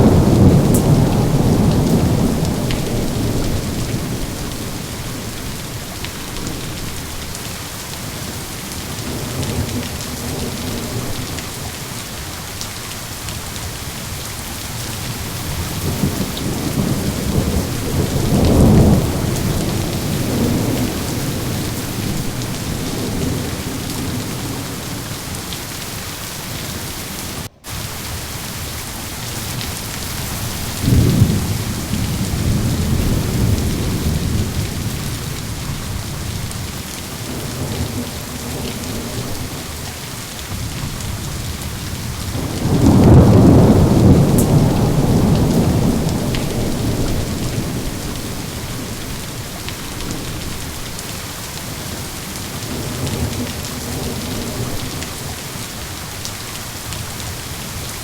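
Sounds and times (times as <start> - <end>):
rolling thunder: 0.0 - 7.4, 15.0 - 25.7, 29.3 - 51.0
heavy rain hissing: 0.0 - 58.0.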